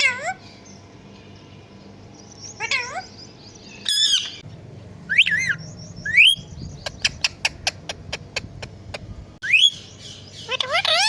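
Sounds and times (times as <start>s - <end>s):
parrot squawking and chirping: 0.0s - 0.5s, 2.4s - 3.2s, 3.8s - 4.4s, 5.1s - 11.0s.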